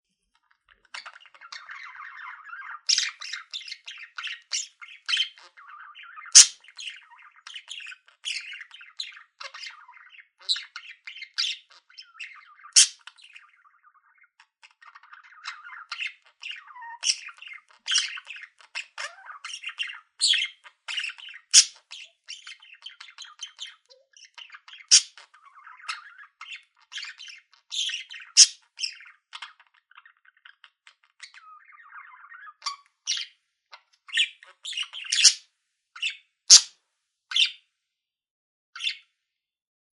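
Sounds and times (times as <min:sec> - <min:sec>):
budgerigar chirping: 0:00.8 - 0:33.4, 0:34.1 - 0:35.4, 0:36.0 - 0:36.7, 0:37.3 - 0:37.6
budgerigar warbling chatter: 0:00.9 - 0:13.6, 0:14.7 - 0:29.6, 0:34.1 - 0:35.4, 0:36.0 - 0:36.7.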